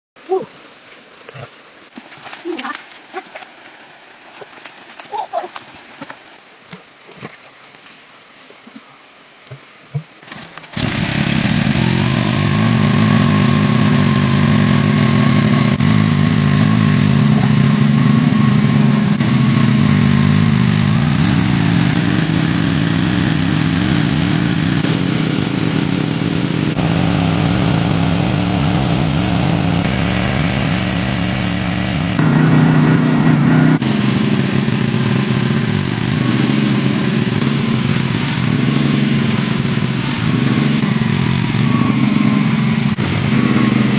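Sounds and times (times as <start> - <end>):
engine running steadily: 10.3 - 43.9.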